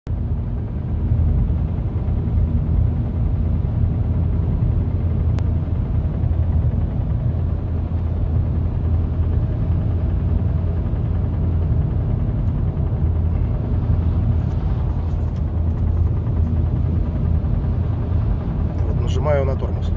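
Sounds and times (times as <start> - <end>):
car engine low rumble: 0.1 - 19.9.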